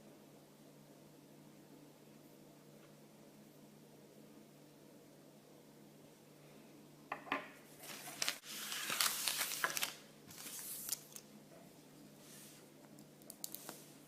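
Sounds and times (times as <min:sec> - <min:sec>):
wrapper crinkling and tearing: 0:07.8 - 0:11.3.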